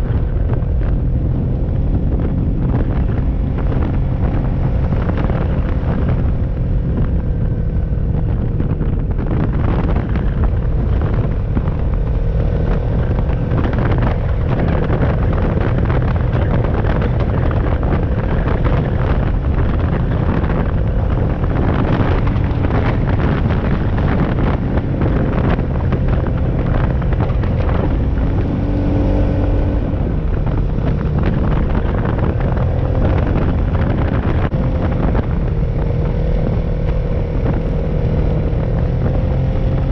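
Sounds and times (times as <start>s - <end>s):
atv engine running: 0.0s - 39.9s
wind noise on microphone: 0.0s - 39.9s.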